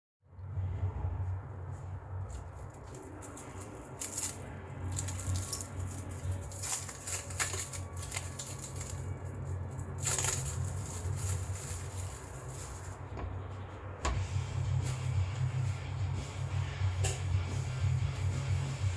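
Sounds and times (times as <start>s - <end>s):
faint background music: 0.3s - 18.9s
light clinks and knocks: 2.3s - 13.3s.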